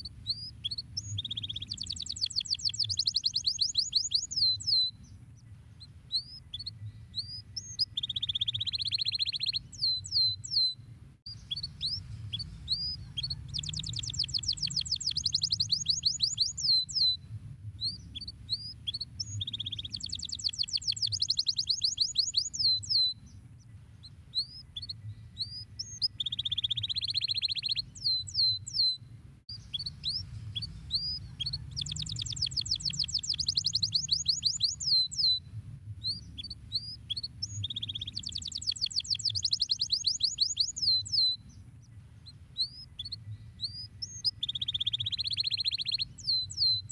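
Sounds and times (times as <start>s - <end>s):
canary singing: 0.0s - 17.2s, 17.8s - 35.4s, 36.0s - 46.9s
low hum: 10.7s - 15.9s.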